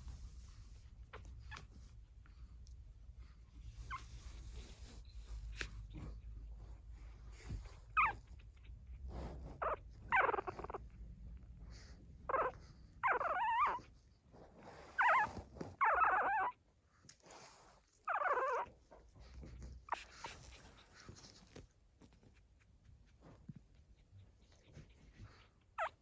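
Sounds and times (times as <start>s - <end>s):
puppy whimpering: 7.7s - 8.6s, 9.6s - 10.9s, 12.2s - 14.0s, 14.9s - 16.6s, 18.0s - 18.8s, 19.8s - 21.6s, 24.0s - 26.0s.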